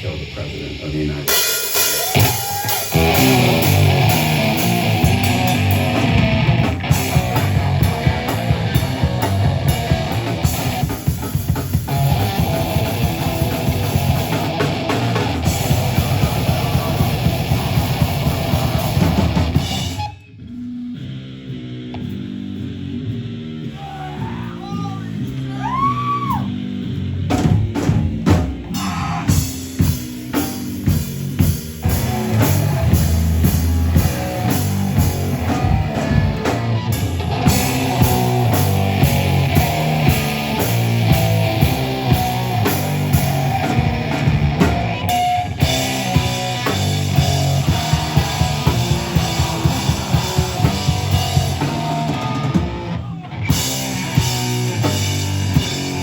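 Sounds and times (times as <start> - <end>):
live rock band: 0.0 - 56.0
sliding high guitar tones: 1.9 - 11.1, 31.8 - 56.0.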